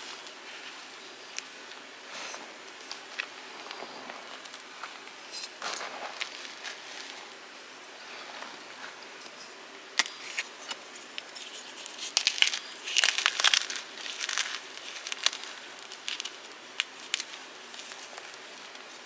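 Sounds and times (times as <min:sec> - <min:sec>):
chalk being crushed: 0:10.0 - 0:19.0.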